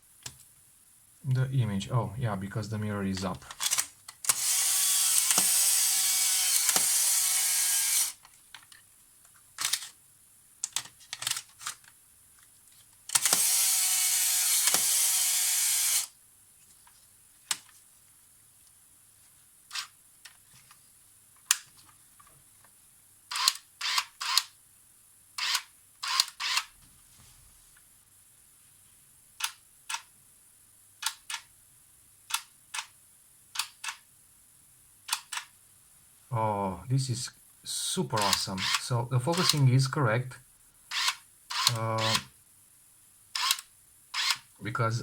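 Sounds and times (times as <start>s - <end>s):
sharp mechanical camera clicks: 3.5s - 8.2s, 9.6s - 10.0s, 13.1s - 16.1s, 23.3s - 24.5s, 25.4s - 26.7s, 33.6s - 34.0s, 35.1s - 35.5s, 38.2s - 39.6s, 40.9s - 42.3s, 43.4s - 44.5s
camera motor whirring: 3.6s - 8.2s, 13.1s - 16.1s, 23.3s - 24.5s, 25.4s - 26.7s, 38.2s - 39.6s, 40.9s - 42.2s, 43.4s - 44.4s.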